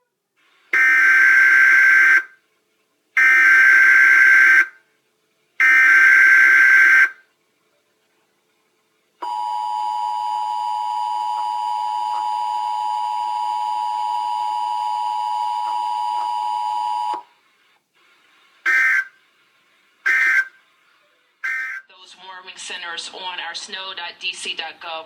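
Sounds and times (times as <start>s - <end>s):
two-pitch electronic alarm tone: 5.6s - 7.1s, 18.7s - 19.1s, 20.1s - 20.5s, 21.4s - 21.8s.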